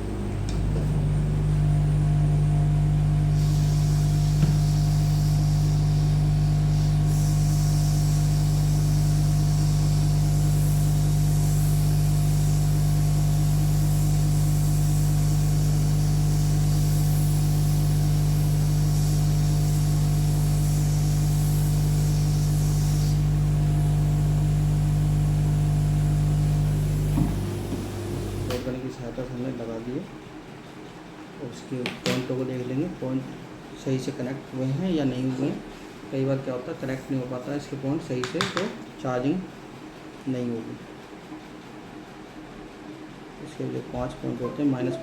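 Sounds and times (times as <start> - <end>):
hot air gun fan humming: 0.0 - 29.5, 34.8 - 39.7.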